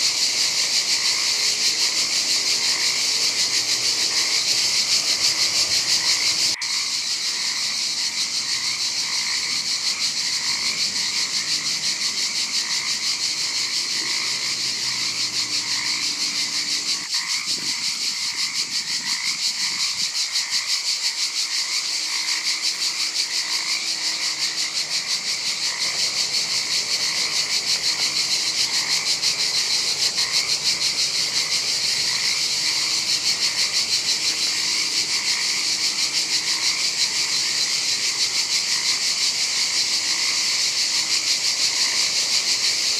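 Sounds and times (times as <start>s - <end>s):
frogs croaking: 0.0s - 42.9s
high insect trill: 0.0s - 42.9s.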